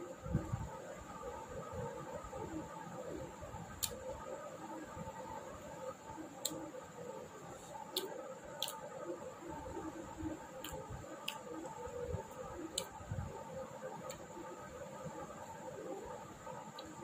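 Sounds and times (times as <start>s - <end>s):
wet lip smacks and mouth clicks: 10.6s - 11.5s
soft chewing and swallowing: 10.6s - 11.7s.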